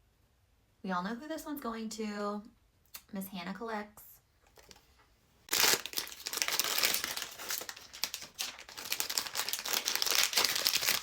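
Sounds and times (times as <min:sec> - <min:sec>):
plastic bag crinkling: 0:05.5 - 0:11.0.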